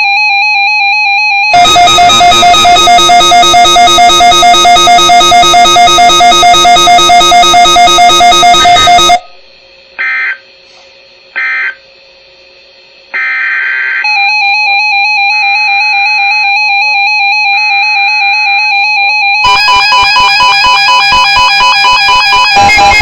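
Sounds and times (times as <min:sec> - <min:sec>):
electronic chirps: 0:01.6 - 0:09.4, 0:19.5 - 0:23.0
loud pulsing buzzy electronic tones: 0:01.6 - 0:09.4, 0:19.5 - 0:23.0
steady buzzy tone with a pulse: 0:01.6 - 0:09.8, 0:19.5 - 0:23.0
faint hum: 0:01.6 - 0:13.1.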